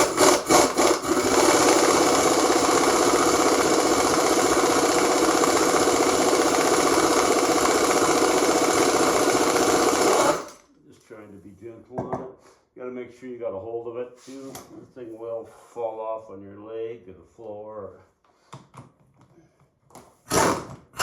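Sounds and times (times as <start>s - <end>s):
power tool rattling: 0.0s - 10.6s, 20.3s - 21.0s.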